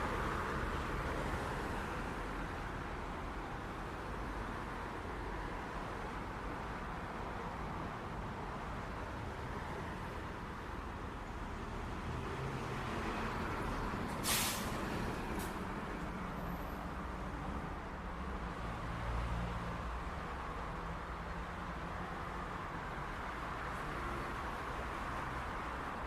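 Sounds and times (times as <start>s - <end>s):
sharp hiss of released air: 14.2s - 14.9s.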